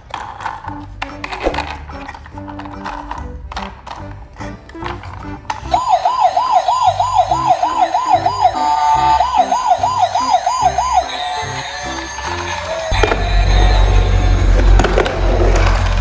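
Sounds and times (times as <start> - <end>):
siren wailing: 5.7 - 16.0.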